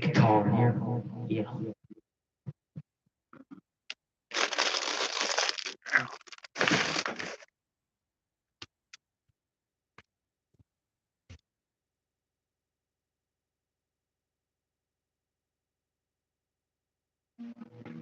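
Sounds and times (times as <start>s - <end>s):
rustling crinkling noise: 4.3s - 7.5s.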